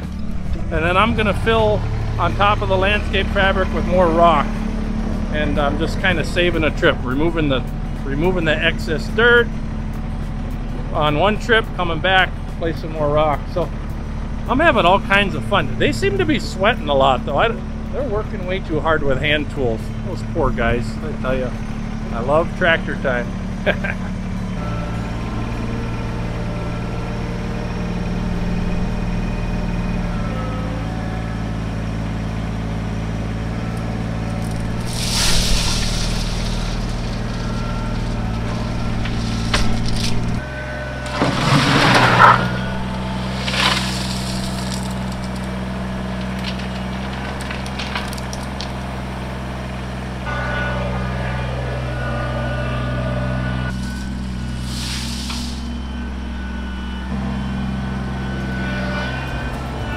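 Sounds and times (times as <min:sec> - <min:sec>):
tractor diesel engine running: 0:00.0 - 0:59.9
loud noisy bursts: 0:34.4 - 0:48.8, 0:50.2 - 0:59.9.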